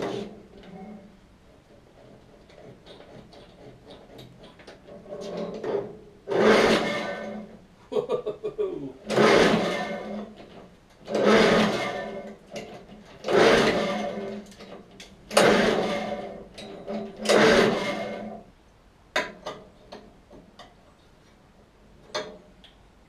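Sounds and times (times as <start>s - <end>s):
lawnmower recoil starter pulls: 2.0s - 7.5s, 9.1s - 18.4s
engine turning over whirr: 5.6s - 7.5s, 9.0s - 18.5s.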